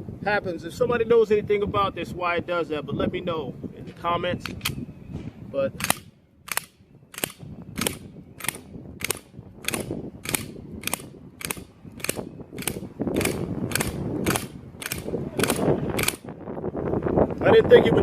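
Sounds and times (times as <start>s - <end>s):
sharp mechanical clicks: 5.8s - 16.3s.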